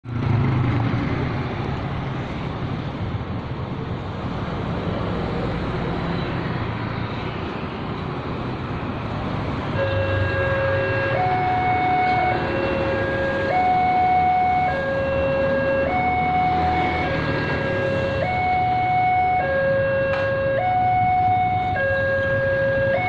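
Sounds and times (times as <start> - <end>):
road traffic with engines and tyres: 0.0 - 23.0
electronic warning siren tone: 9.8 - 23.0.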